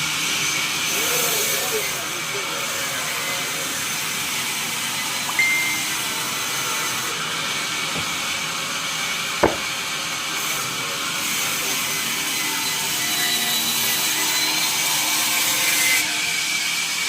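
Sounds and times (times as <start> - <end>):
sharp knock: 9.4 - 9.7.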